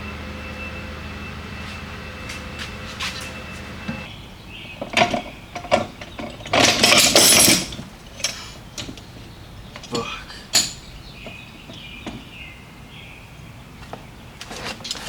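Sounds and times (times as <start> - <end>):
hand tools and metal parts clanking: 1.6 - 4.1, 4.7 - 12.4, 13.9 - 15.0.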